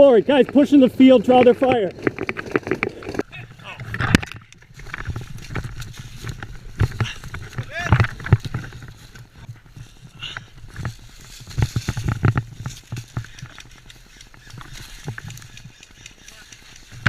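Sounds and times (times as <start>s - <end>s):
running footsteps on ground: 4.6s - 17.0s.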